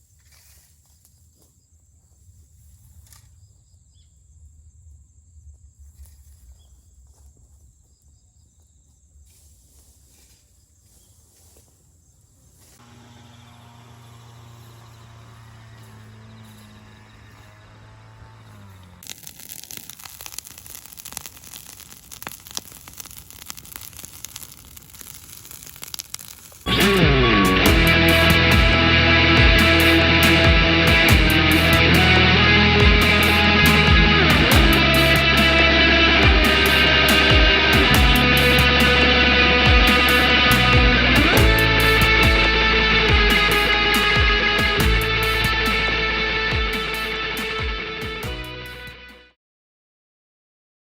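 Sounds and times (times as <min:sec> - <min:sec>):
dry weeds burning: 0:14.3 - 0:45.9
sharp fire crackles: 0:18.6 - 0:28.8, 0:29.6 - 0:45.8.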